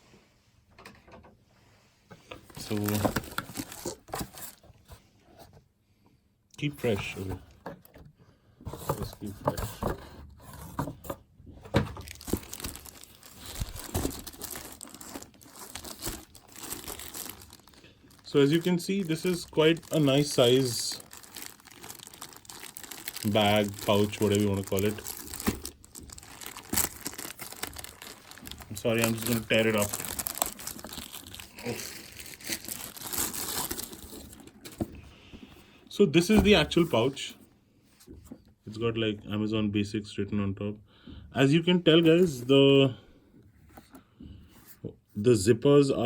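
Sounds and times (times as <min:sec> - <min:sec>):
plastic wrapper crinkling: 0:02.5 - 0:04.6, 0:12.0 - 0:35.0.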